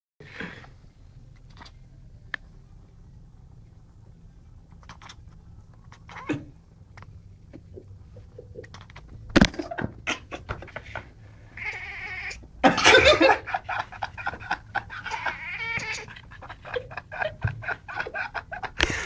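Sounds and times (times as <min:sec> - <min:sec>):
cat making wavering calls: 0:11.6 - 0:12.4, 0:15.0 - 0:16.3.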